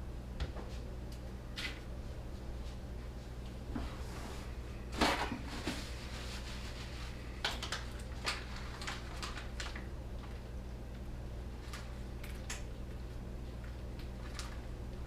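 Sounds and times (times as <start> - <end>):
scrape or rustle: 3.8 - 7.2.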